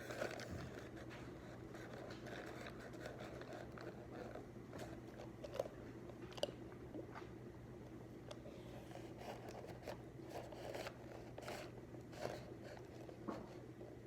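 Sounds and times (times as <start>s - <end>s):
low room hum: 0.0s - 14.0s.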